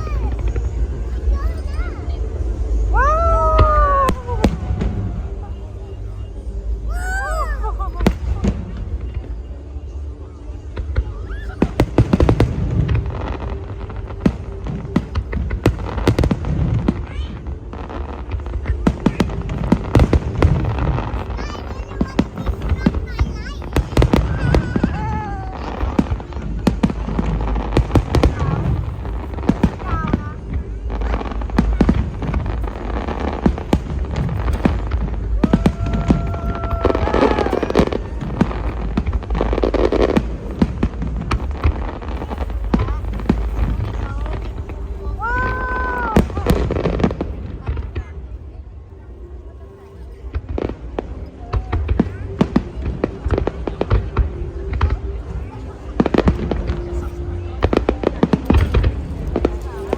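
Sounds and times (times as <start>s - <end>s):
low rumble: 0.0s - 21.4s
fireworks bangs and crackles: 0.0s - 59.9s
firework whistling: 18.0s - 47.3s.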